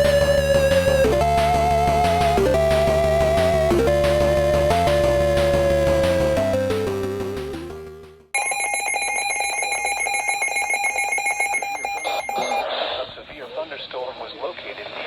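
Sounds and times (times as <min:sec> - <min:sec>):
music: 0:00.0 - 0:08.3
pulsing electronic alert tone: 0:11.2 - 0:12.6.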